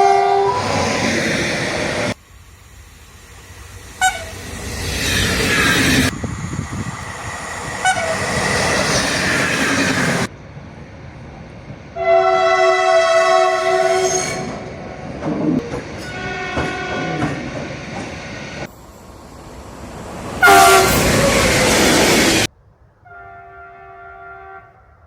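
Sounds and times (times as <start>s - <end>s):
multi-tone train horn: 0.0s - 0.9s, 4.0s - 4.4s, 7.8s - 8.3s, 12.0s - 14.7s, 16.0s - 17.4s, 20.4s - 21.7s, 23.0s - 25.0s
rumbling train noise: 0.0s - 25.0s.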